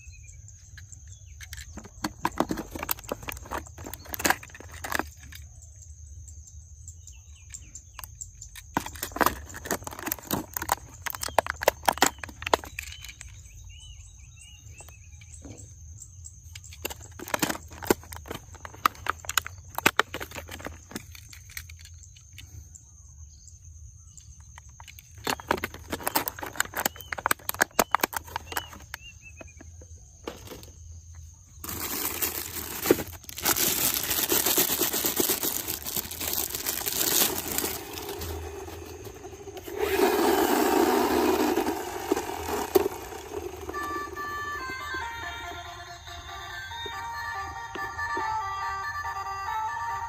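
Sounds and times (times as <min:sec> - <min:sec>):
plastic toy cars clicking together: 0:00.6 - 0:05.6, 0:07.4 - 0:14.0, 0:16.4 - 0:22.6, 0:24.2 - 0:29.7, 0:31.6 - 0:45.0
toy cars scraping and rolling: 0:00.6 - 0:05.6, 0:07.5 - 0:15.7, 0:16.4 - 0:22.5, 0:24.3 - 0:29.7, 0:31.6 - 0:48.7.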